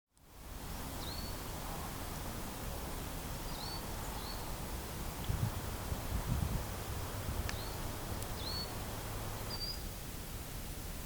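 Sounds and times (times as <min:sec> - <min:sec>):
steady background hiss: 0:00.2 - 0:11.0
high hooked bird calls: 0:08.4 - 0:08.8.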